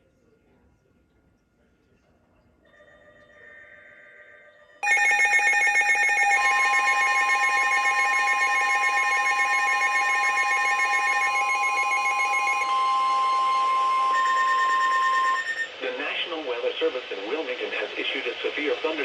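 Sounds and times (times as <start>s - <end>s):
rapid pulsing alert beeps: 4.8s - 13.5s
steady warning alarm tone: 4.8s - 15.8s.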